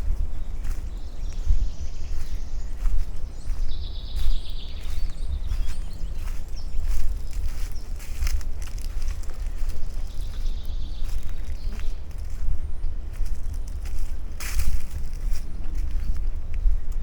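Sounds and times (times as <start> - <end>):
low rumble on microphone: 0.0 - 17.0.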